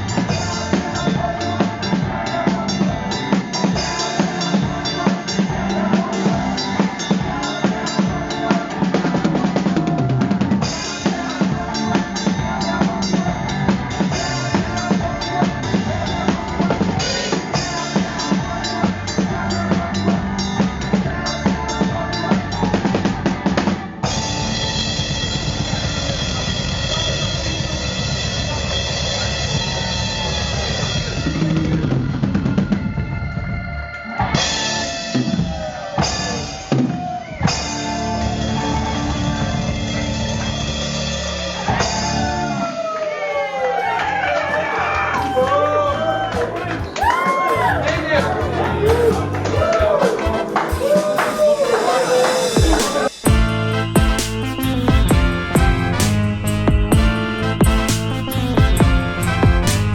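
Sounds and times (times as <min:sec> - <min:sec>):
band music with drum kit: 0:00.0 - 0:59.9.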